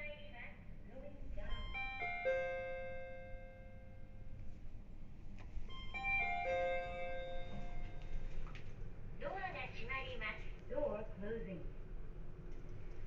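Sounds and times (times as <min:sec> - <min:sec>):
elevator four-note chime: 0:01.4 - 0:04.4, 0:05.6 - 0:08.3.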